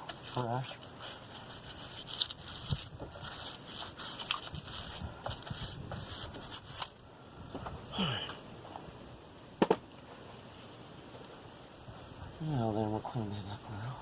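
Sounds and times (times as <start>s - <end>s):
wire brush scrubbing metal: 0.0s - 7.0s.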